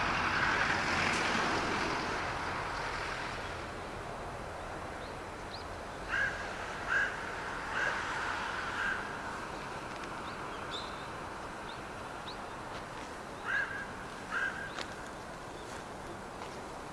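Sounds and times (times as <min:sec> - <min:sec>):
crows cawing: 0:06.1 - 0:09.2, 0:13.4 - 0:15.0
small birds chirping: 0:09.5 - 0:16.4.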